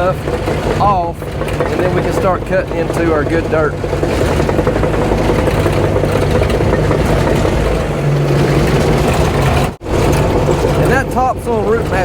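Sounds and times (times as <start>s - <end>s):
diesel engine running: 0.0s - 12.0s.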